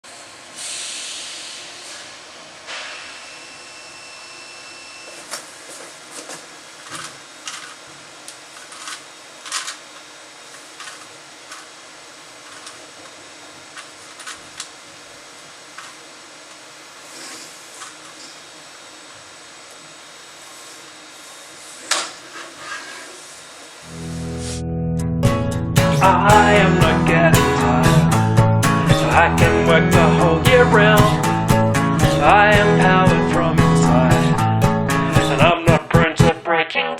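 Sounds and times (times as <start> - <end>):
steady hiss: 0.2 - 3.2
high motor whine: 23.8 - 35.6.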